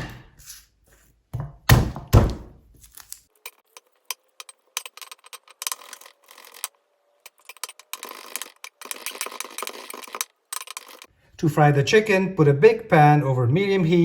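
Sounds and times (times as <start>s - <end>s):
knife chopping on cutting board: 0.0s - 0.4s.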